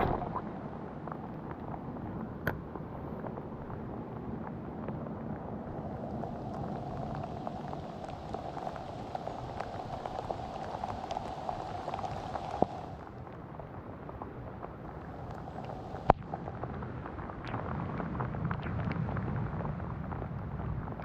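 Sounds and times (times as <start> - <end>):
low rumble: 0.0 - 14.0
rain falling: 0.0 - 21.0
raindrop ticks: 0.0 - 21.0.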